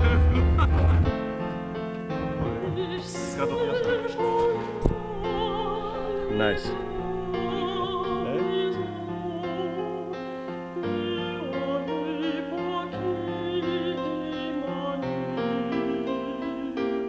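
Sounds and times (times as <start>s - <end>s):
sustained chords: 0.0s - 11.3s
operatic singing voice: 0.0s - 17.0s.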